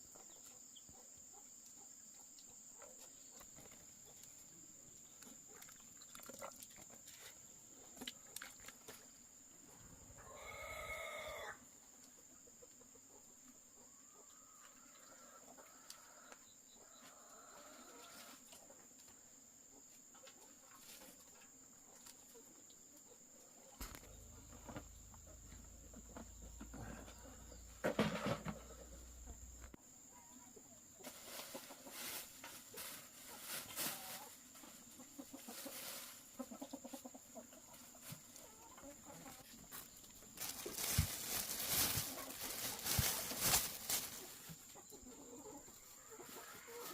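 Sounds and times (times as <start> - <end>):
chickens clucking: 0.0 - 46.9
rooster crowing: 10.2 - 11.6.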